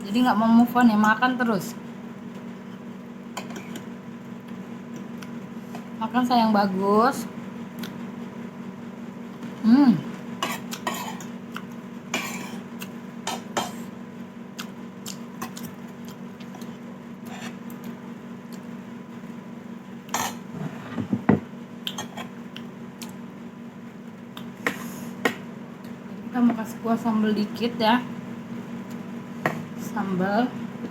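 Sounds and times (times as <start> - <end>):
steady low hum: 0.0 - 30.9
cutlery clinking against bowl: 10.4 - 11.3.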